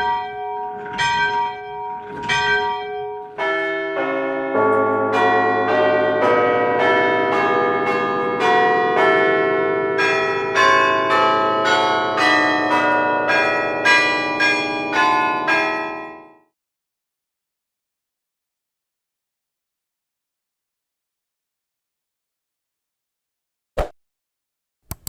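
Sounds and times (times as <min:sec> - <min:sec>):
church bells pealing: 0:00.0 - 0:16.5.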